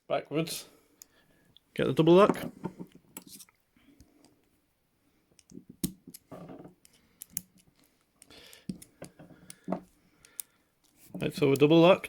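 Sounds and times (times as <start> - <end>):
handcuffs rattling: 6.1 - 10.6
handcuff ratchet clicks: 6.8 - 8.9, 10.2 - 10.5.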